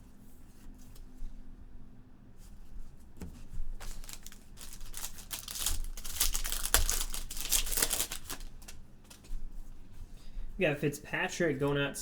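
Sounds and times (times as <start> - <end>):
plastic wrapper crinkling: 3.8 - 9.3.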